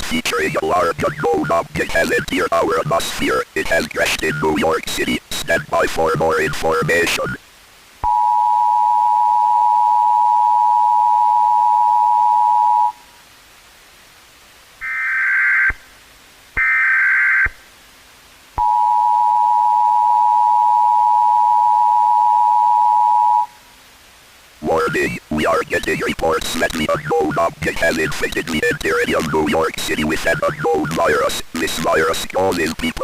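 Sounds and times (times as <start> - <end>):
digital data tone bursts: 0.0 - 7.4, 24.6 - 33.0.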